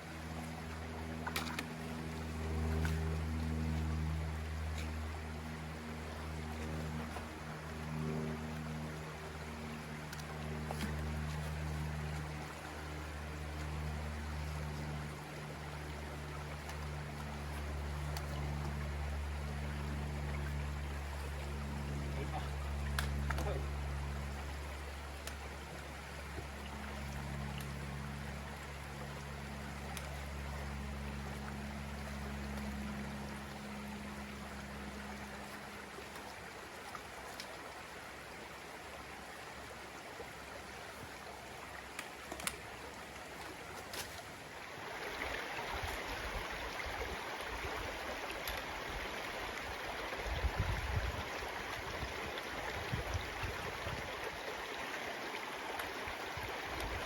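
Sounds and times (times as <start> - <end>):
creek water rushing: 0.0 - 57.0.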